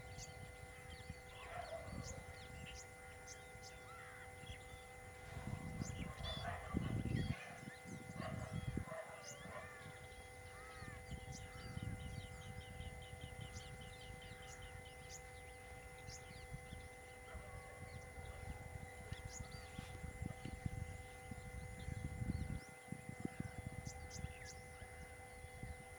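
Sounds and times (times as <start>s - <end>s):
rapid bird chirps: 0.0s - 22.8s
birds whistling: 0.0s - 25.8s.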